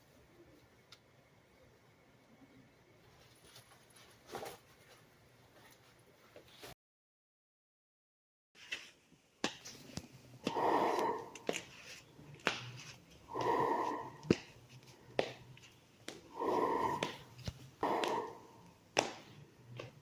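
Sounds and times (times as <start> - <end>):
person breathing heavily: 10.4 - 11.8, 13.2 - 15.6, 16.2 - 19.7.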